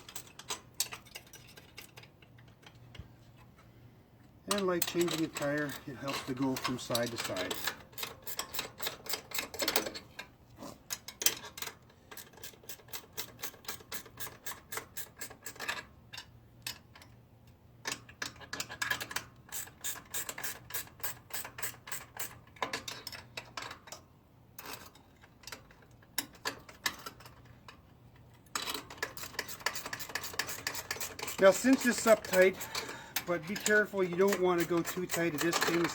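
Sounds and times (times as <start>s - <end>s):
wrench ratchet clicking: 18.2s - 23.0s, 28.6s - 35.9s.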